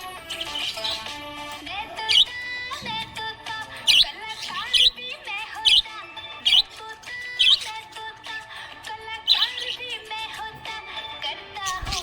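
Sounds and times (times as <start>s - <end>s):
budgie chirping: 0.0s - 1.4s, 2.0s - 2.8s, 3.6s - 8.5s, 9.1s - 10.5s
background music with held tones: 0.0s - 12.0s.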